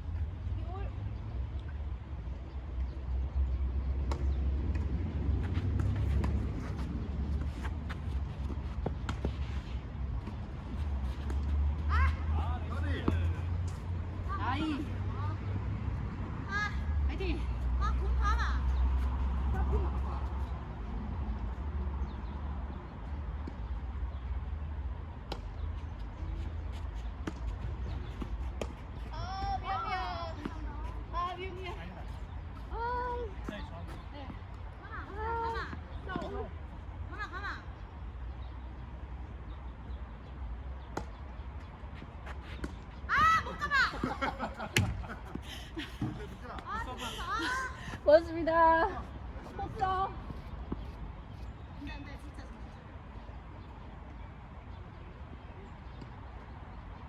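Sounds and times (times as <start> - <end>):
tennis balls struck by rackets: 4.0 - 9.6, 42.0 - 45.4
rackets hitting tennis ball: 42.2 - 46.9.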